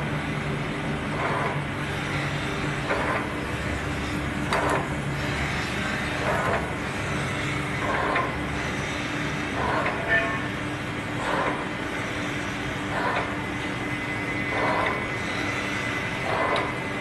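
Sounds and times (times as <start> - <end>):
grinder motor hum: 0.0 - 17.0
hissy grinding swell: 1.3 - 17.0.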